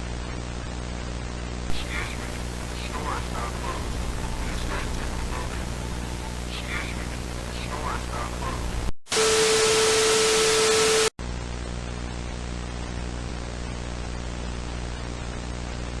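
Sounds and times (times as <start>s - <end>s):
low buzzing hum with hiss: 1.7s - 8.9s
white-noise static burst with tone: 1.7s - 11.1s.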